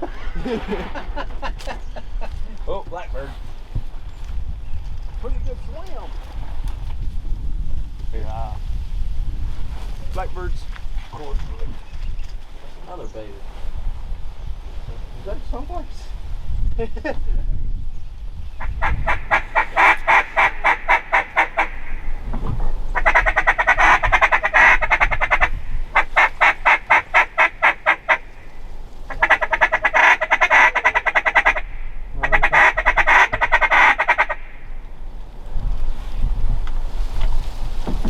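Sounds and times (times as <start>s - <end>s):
duck call rapid quacks: 18.6s - 22.0s, 23.0s - 28.4s, 29.1s - 34.6s.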